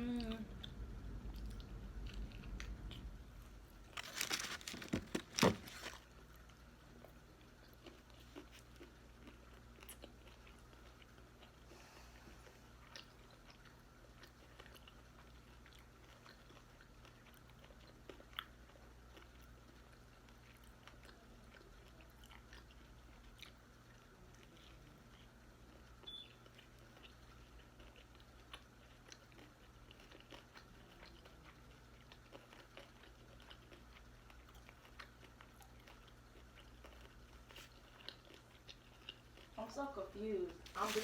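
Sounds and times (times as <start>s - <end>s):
person crunching food: 3.9s - 11.5s.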